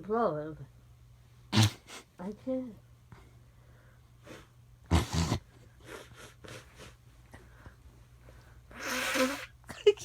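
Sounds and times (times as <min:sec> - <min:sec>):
woman snorting: 0:01.5 - 0:02.1, 0:04.3 - 0:07.0, 0:08.7 - 0:09.5
soft sniffs: 0:04.2 - 0:09.5.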